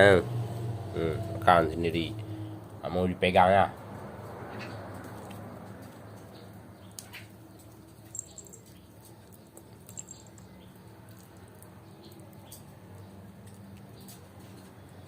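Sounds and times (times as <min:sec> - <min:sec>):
kitten chewing clicks: 0:06.9 - 0:14.8.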